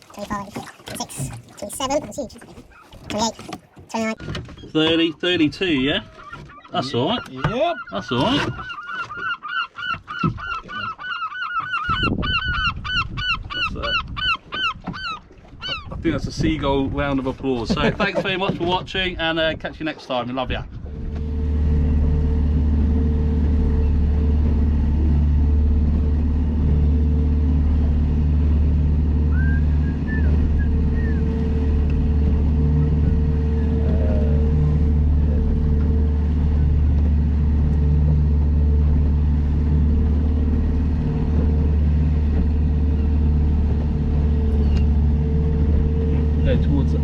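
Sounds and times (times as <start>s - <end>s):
boat engine humming: 0.0s - 47.0s.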